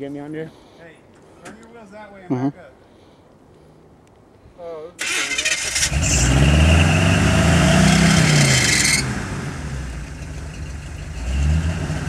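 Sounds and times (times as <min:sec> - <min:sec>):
engine revving: 0:05.0 - 0:12.0.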